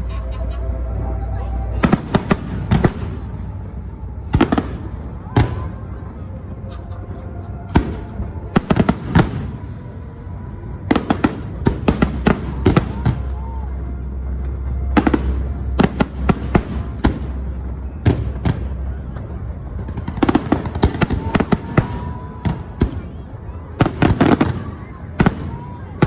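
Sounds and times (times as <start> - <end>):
low rumble: 0.0 - 26.0
fireworks bursting bangs: 1.8 - 3.6, 4.3 - 5.8, 7.7 - 9.7, 10.9 - 13.6, 14.9 - 18.9, 19.8 - 23.2, 23.8 - 26.0.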